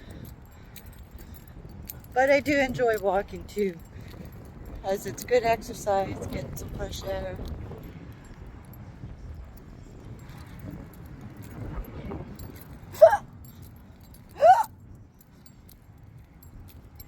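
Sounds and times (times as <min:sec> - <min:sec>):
woman hiccuping: 0:13.0 - 0:13.3, 0:14.4 - 0:14.7.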